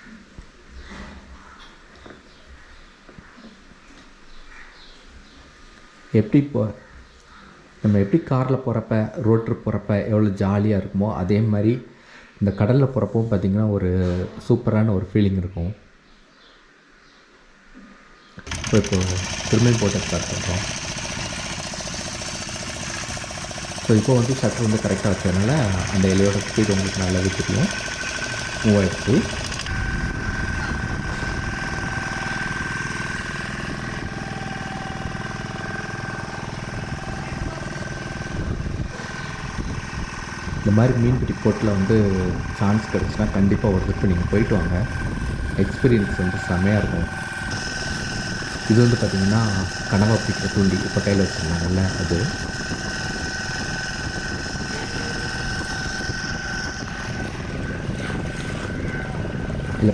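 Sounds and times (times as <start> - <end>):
boat engine running: 18.4 - 59.9
steady high whine: 18.4 - 59.9.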